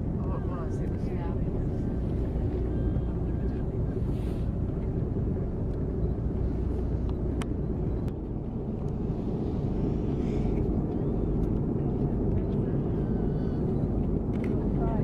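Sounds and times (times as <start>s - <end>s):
boat engine rumbling: 0.0s - 15.0s.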